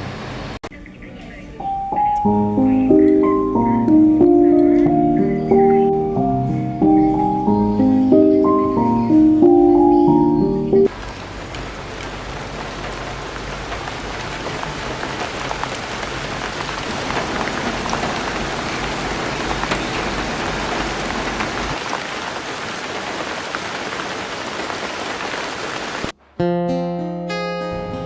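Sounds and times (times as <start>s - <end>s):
steady rain: 0.0s - 0.6s, 1.6s - 26.2s
drops ticking: 1.6s - 12.6s.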